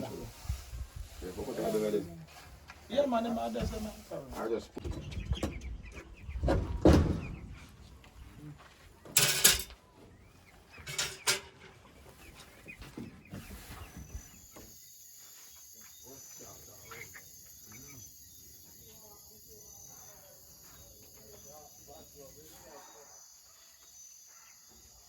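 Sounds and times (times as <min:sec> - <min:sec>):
faint bird chirps: 0:12.0 - 0:25.0
crickets chirping: 0:14.0 - 0:25.0.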